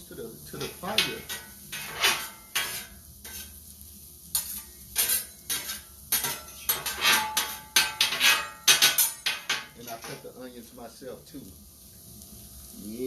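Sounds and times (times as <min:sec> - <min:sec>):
onions sizzling on griddle: 0:00.0 - 0:13.0
metal spatula scraping: 0:00.5 - 0:03.7, 0:04.3 - 0:10.3.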